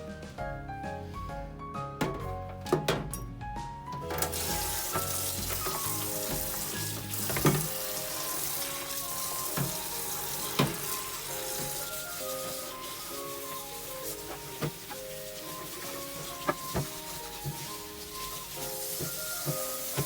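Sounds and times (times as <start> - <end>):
background music: 0.0 - 20.0
clunks of items handled: 2.0 - 7.8
tap water running into sink: 4.0 - 20.0.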